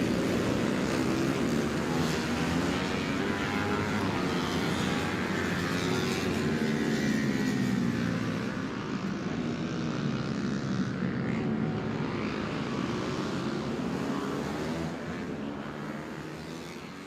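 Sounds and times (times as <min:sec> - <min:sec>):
racing motorcycles droning: 0:00.0 - 0:17.0.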